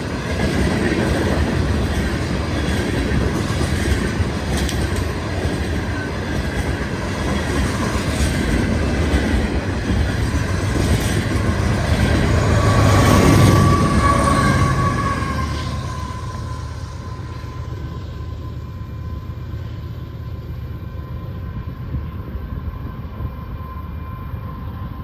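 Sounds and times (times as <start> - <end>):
freight train rumble and clatter: 0.0 - 25.0
high wheel squeal: 11.5 - 19.0.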